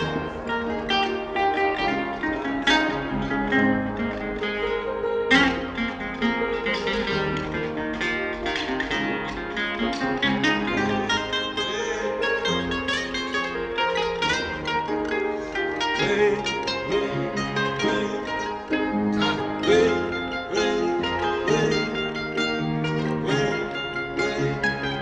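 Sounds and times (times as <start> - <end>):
plucked string music: 0.0 - 25.0.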